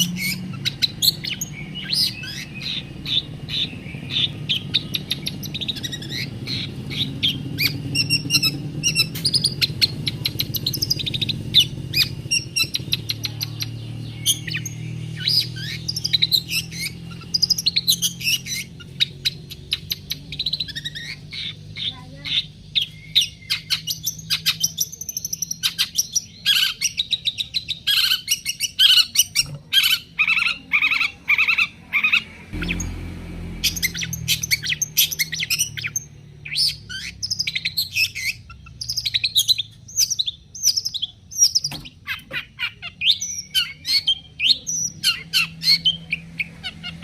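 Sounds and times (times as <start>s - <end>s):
shrike chirping: 0.0s - 47.0s.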